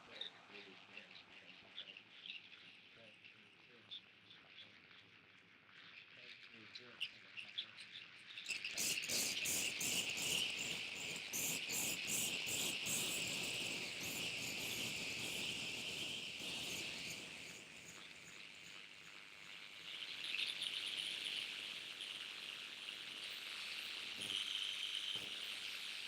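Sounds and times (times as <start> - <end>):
high insect-like synthesizer drone: 8.5 - 26.0.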